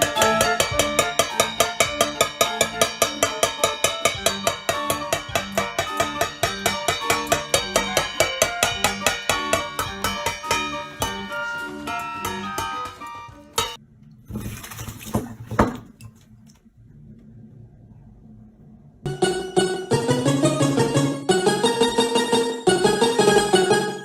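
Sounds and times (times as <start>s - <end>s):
upbeat percussive music: 0.0s - 13.8s, 19.1s - 24.0s.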